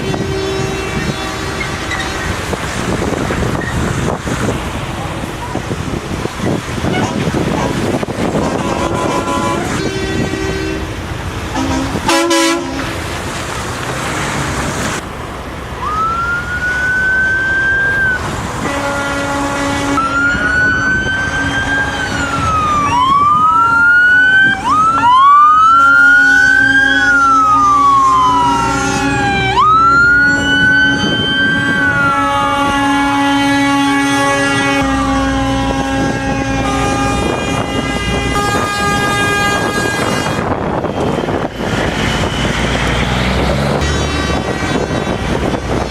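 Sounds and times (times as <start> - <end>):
truck air horn blasts: 0.0 - 2.5, 6.8 - 13.0, 18.6 - 22.4, 23.3 - 29.7, 30.3 - 45.6
emergency sirens wailing: 0.0 - 13.2, 13.8 - 45.9.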